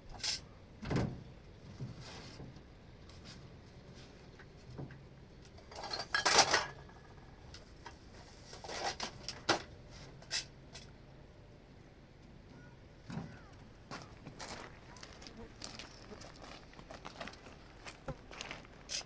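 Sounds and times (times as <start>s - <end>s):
clatter of things being handled: 1.7s - 10.9s.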